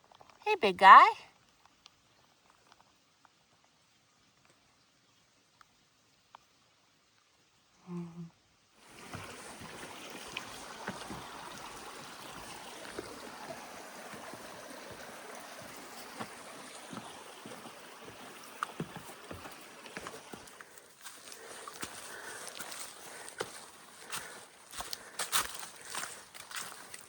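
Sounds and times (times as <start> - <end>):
stream water rushing: 8.8 - 27.0.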